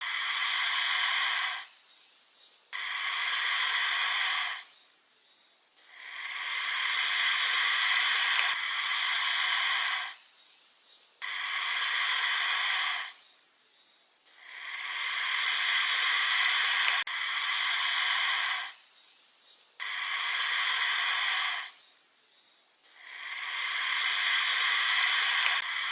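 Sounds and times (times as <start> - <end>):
snake hissing: 0.0 - 1.7, 2.7 - 4.7, 5.8 - 10.2, 11.2 - 13.2, 14.2 - 18.8, 19.8 - 21.8, 22.9 - 25.9.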